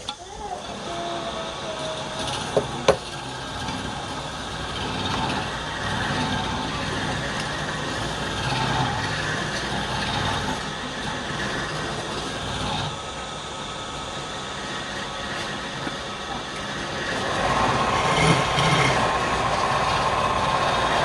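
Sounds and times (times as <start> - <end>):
wood lathe running: 0.6 - 21.0.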